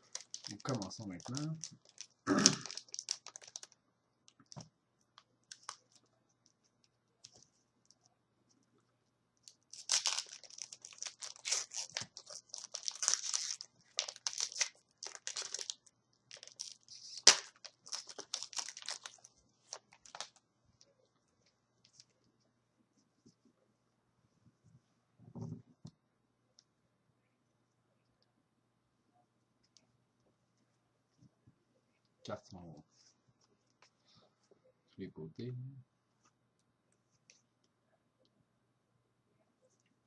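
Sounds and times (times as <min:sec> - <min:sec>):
foil wrapper tearing and crinkling: 0:00.0 - 0:03.8, 0:09.5 - 0:20.4.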